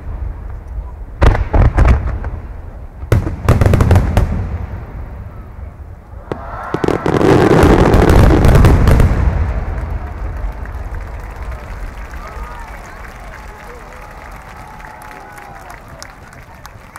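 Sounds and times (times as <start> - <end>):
fireworks booming: 0.0 - 12.2
fireworks crackling: 0.0 - 16.9.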